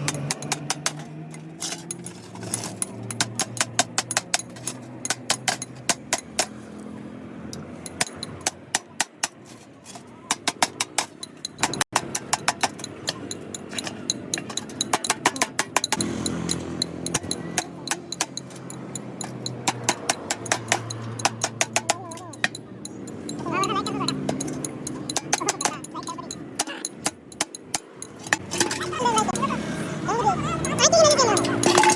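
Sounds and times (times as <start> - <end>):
hand tool taps and clicks: 0.0 - 2.0, 2.7 - 6.6, 7.5 - 28.8.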